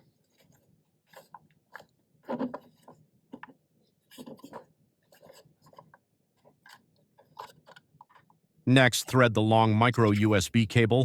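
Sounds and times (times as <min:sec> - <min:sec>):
plastic parts scraping and rubbing: 0:00.0 - 0:08.4.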